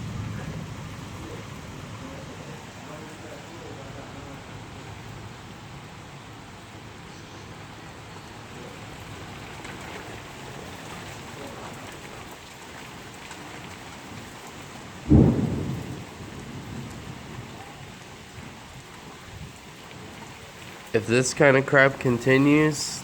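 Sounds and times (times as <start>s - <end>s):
thunder clap: 0.0s - 5.3s, 14.9s - 20.2s
heavy rain falling: 0.0s - 23.0s.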